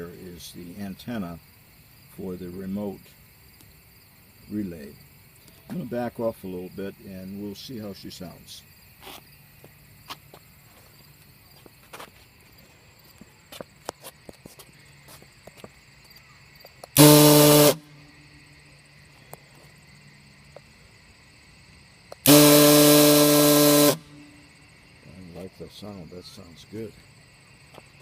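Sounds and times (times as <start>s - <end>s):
deep air horn blasts: 17.0s - 18.0s, 22.2s - 24.4s.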